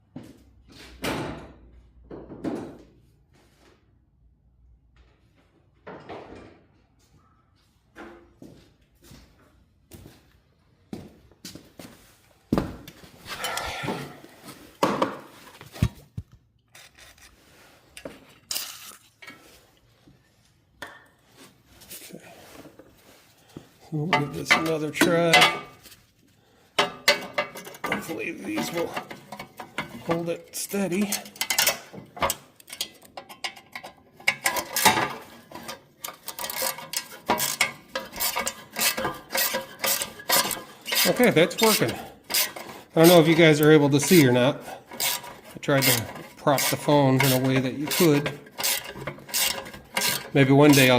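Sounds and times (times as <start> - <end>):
wrench clicking and scraping on metal: 18.0 - 19.4, 24.1 - 25.8, 26.8 - 50.9
hand tools clinking on sheet metal: 24.0 - 25.8, 26.8 - 50.9.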